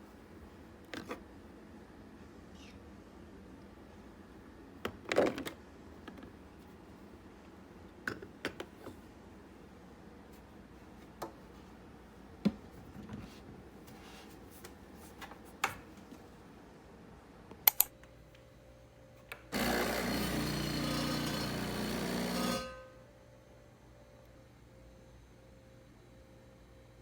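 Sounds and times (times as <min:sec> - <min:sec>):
faint steady hum: 0:00.0 - 0:27.0
small electric motor running: 0:19.6 - 0:22.8.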